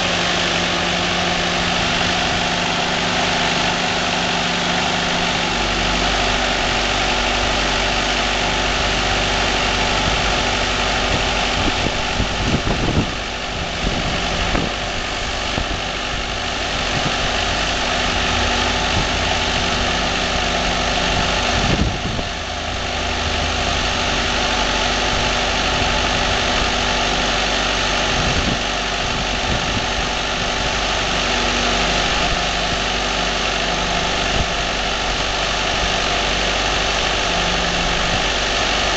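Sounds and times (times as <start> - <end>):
engine running steadily: 0.0 - 38.9.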